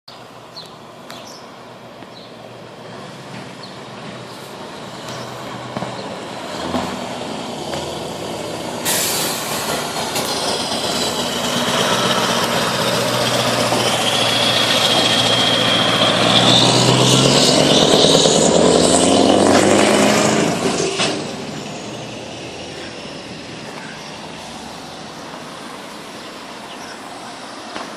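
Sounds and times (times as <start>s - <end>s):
truck diesel engine accelerating: 0.3s - 27.9s
hiss of air: 8.8s - 9.8s.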